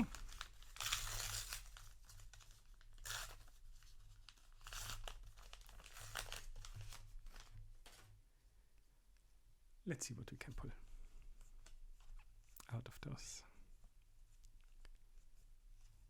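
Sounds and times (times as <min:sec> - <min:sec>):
paper pack tearing: 0:00.0 - 0:03.5
wrapper crinkling: 0:00.0 - 0:08.1.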